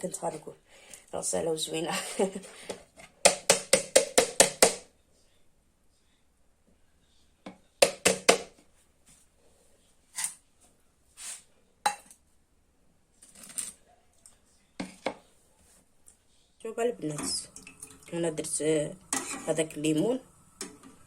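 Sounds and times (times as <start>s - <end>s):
utensil clinks and scrapes: 13.2s - 13.8s.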